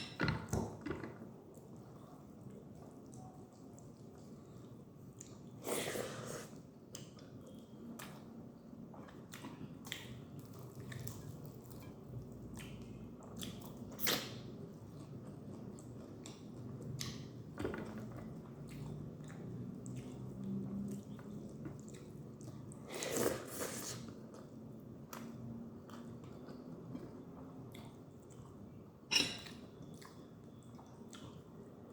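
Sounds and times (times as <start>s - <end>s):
wet chewing and mouth smacks: 29.8s - 31.9s.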